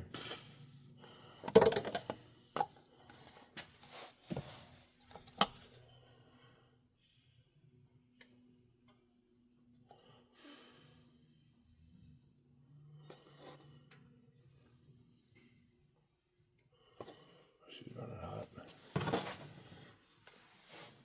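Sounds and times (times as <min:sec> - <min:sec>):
knocks and clunks of parts: 0:01.4 - 0:02.8.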